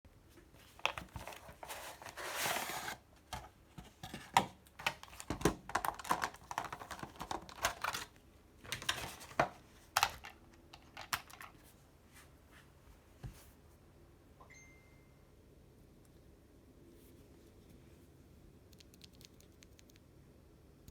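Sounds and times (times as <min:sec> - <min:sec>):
packaging rustling: 0:00.6 - 0:09.5.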